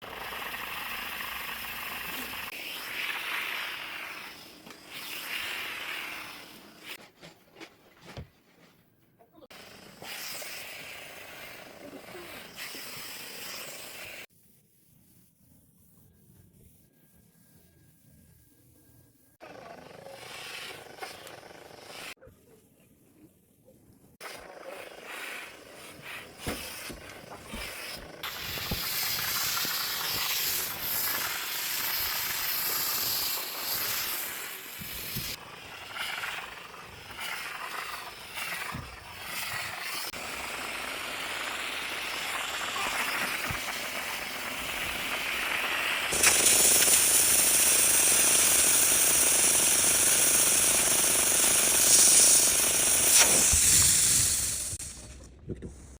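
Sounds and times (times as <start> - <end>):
steam cleaner hissing: 0.0 - 7.0, 9.5 - 14.3, 24.2 - 55.1.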